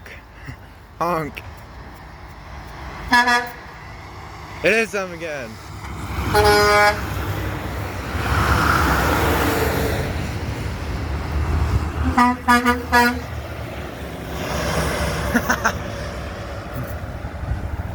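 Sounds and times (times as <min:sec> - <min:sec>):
passing road traffic: 0:00.0 - 0:17.9
truck horn honks: 0:03.1 - 0:03.7, 0:06.3 - 0:07.1, 0:12.0 - 0:13.4.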